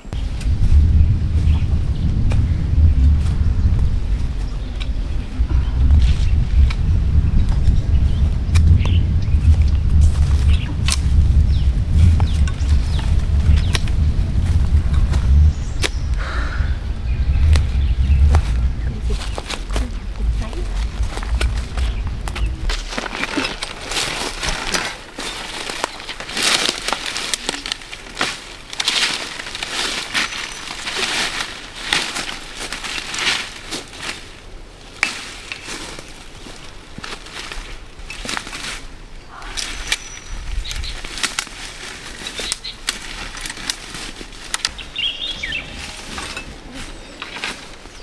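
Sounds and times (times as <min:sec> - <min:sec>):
bird chirping: 0:00.0 - 0:23.5, 0:44.7 - 0:48.0
leaves and stems rustling: 0:00.0 - 0:48.0.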